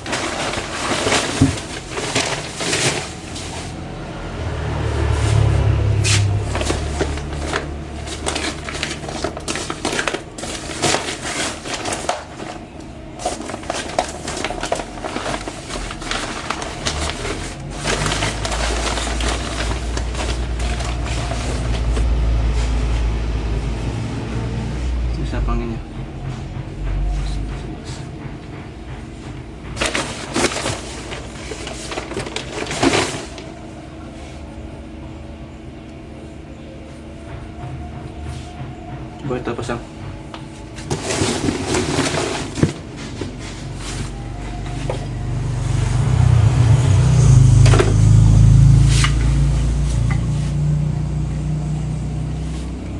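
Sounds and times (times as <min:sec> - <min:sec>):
packaging crinkling and rustling: 0:00.0 - 0:23.0, 0:29.8 - 0:34.3, 0:40.4 - 0:45.2.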